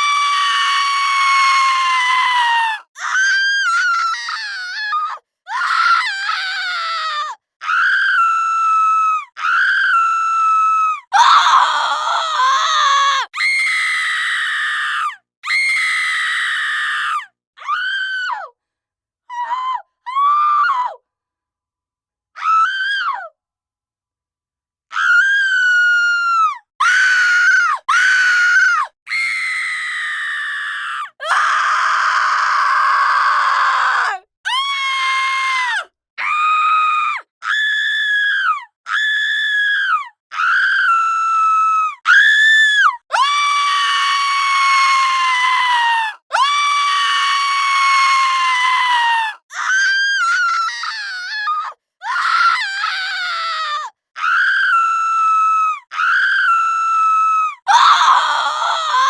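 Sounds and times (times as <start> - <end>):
women screaming: 11.1 - 14.6, 43.1 - 59.0.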